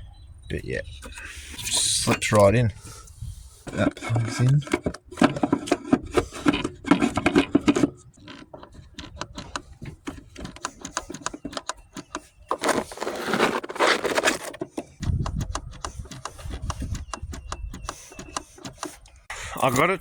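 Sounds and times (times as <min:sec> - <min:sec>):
scraping on filter housing: 0:01.0 - 0:19.3
small clicks and knocks: 0:03.7 - 0:19.2.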